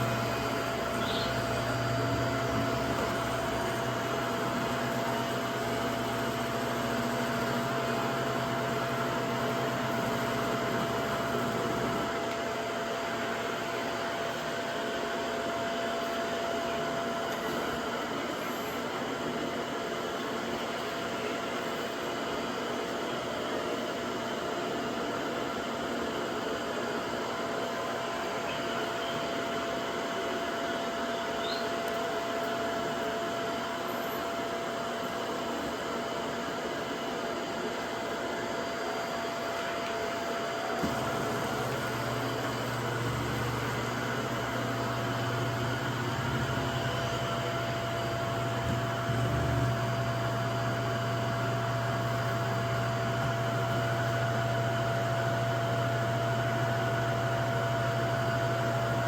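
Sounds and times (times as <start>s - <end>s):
vacuum cleaner whine: 0.0s - 59.0s
deeper hum: 40.8s - 55.6s.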